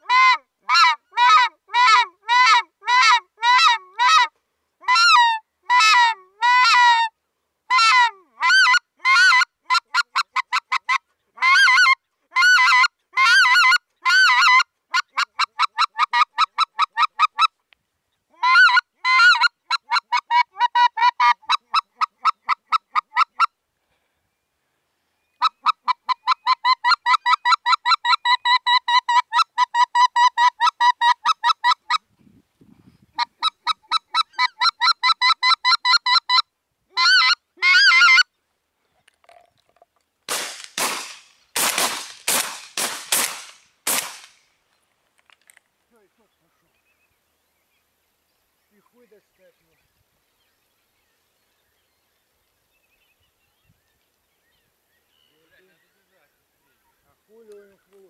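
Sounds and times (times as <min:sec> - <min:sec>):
goose call honks: 0:00.0 - 0:07.1, 0:07.7 - 0:17.5.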